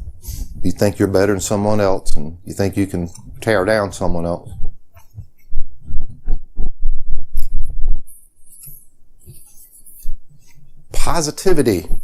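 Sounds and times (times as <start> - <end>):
breath hiss: 0.0 - 0.6.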